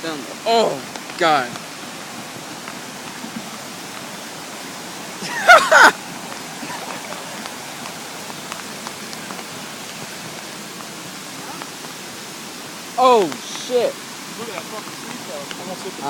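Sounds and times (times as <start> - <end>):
rain hissing: 0.0 - 16.0
rushing floodwater: 0.0 - 16.0
person exclaiming: 5.2 - 6.0.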